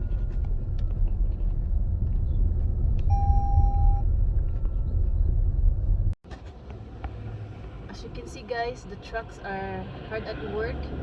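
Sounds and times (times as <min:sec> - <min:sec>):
car engine and road noise: 0:00.0 - 0:11.0
electronic beep: 0:03.1 - 0:04.0.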